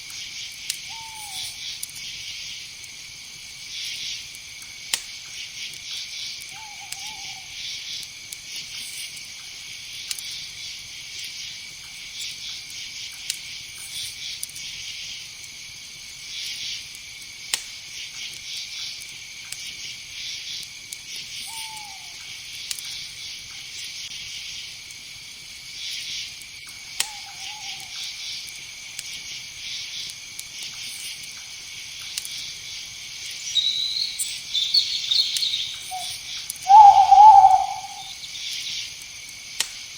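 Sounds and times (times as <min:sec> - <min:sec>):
insects chirring: 0:00.0 - 0:39.9
short falling calls: 0:33.4 - 0:38.2
loud high call: 0:36.7 - 0:38.1.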